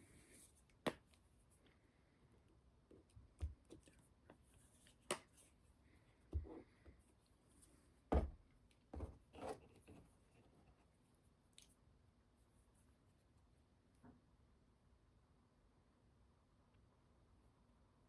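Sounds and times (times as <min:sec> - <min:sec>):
sharp knocks on workbench: 0:08.1 - 0:08.4.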